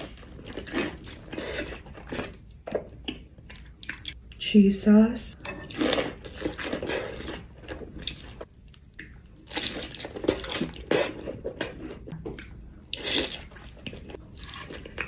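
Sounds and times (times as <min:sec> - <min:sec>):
food crunching: 0:00.0 - 0:04.2, 0:05.6 - 0:15.0
biting and chewing: 0:05.7 - 0:15.0.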